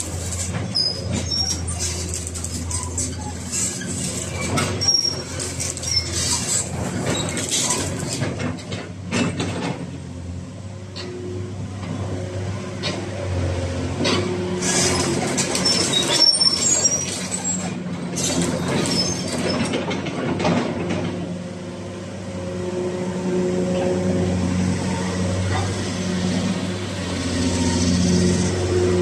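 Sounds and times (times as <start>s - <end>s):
metallic clatter and squeals: 0.0s - 9.8s, 14.0s - 21.2s, 24.7s - 29.0s
excavator diesel engine running: 0.0s - 29.0s.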